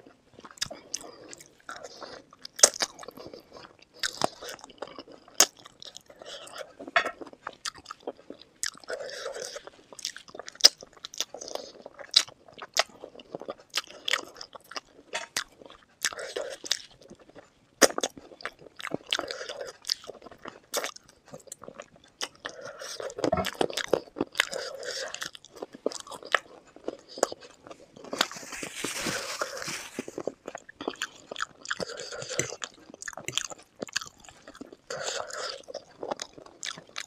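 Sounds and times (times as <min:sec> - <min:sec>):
crunchy chewing and biting: 0:00.4 - 0:37.0
wet mouth sounds: 0:29.4 - 0:34.1.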